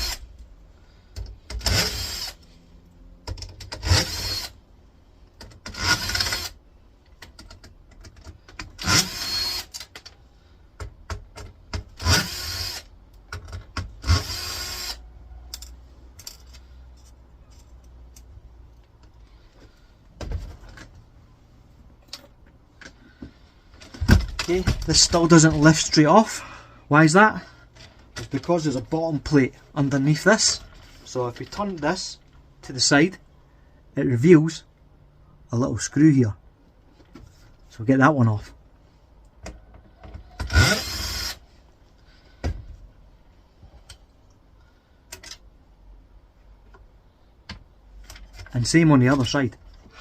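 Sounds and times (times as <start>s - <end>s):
cordless power screwdriver whirring: 1.6s - 2.4s, 8.8s - 9.9s, 12.0s - 12.9s, 14.0s - 15.0s, 40.5s - 41.4s
clicks of parts being handled: 15.5s - 19.6s, 45.1s - 45.5s.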